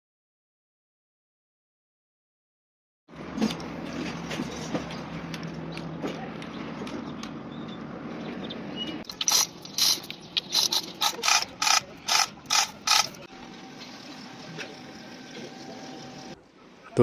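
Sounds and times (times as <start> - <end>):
ratchet wrench clicking: 10.6 - 13.2.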